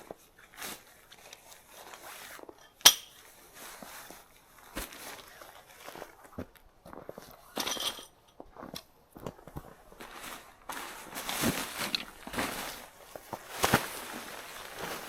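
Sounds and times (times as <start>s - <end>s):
footsteps crunching in snow: 3.4s - 7.4s, 8.5s - 15.0s.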